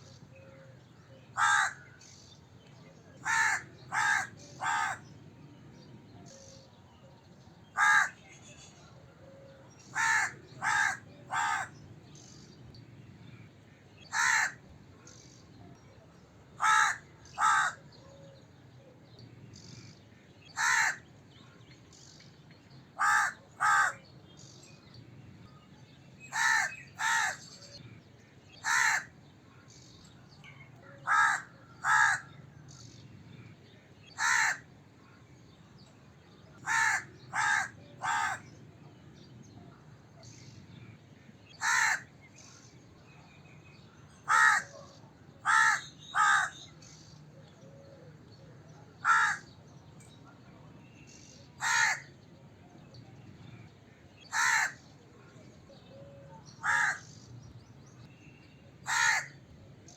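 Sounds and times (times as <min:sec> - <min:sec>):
crow cawing: 0:01.3 - 0:02.0, 0:03.2 - 0:05.1, 0:07.8 - 0:08.2, 0:09.9 - 0:11.8, 0:14.1 - 0:14.7, 0:16.6 - 0:17.9, 0:20.6 - 0:21.0, 0:23.0 - 0:24.0, 0:26.3 - 0:27.4, 0:28.6 - 0:29.1, 0:31.0 - 0:32.3, 0:34.2 - 0:34.7, 0:36.6 - 0:38.5, 0:41.6 - 0:42.1, 0:44.3 - 0:44.7, 0:45.4 - 0:46.6, 0:49.0 - 0:49.5, 0:51.6 - 0:52.1, 0:54.3 - 0:54.8, 0:56.6 - 0:57.1, 0:58.8 - 0:59.4.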